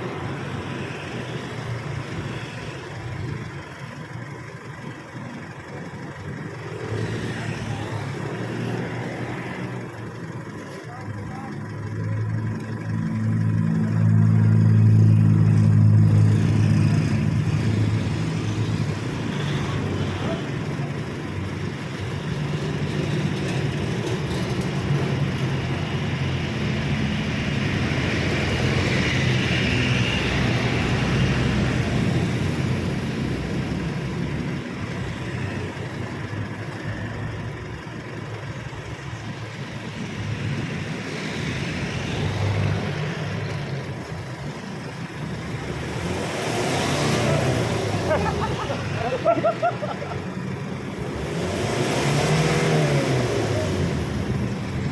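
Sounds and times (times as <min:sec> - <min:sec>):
traffic noise: 0:00.0 - 0:54.9
vehicle engines running: 0:00.0 - 0:54.9.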